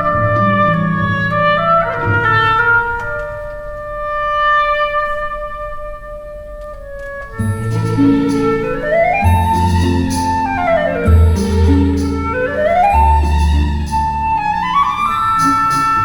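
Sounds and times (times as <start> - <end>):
instrumental background music: 7.2 - 16.0.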